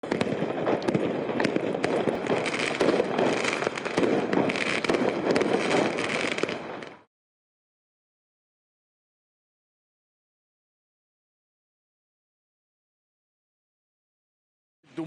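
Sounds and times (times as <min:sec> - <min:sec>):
fireworks crackling: 0:00.0 - 0:07.1.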